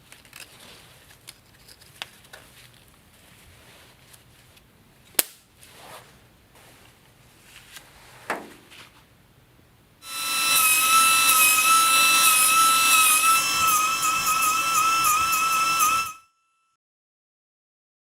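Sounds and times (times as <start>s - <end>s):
pneumatic belt sander whining: 10.0s - 16.2s.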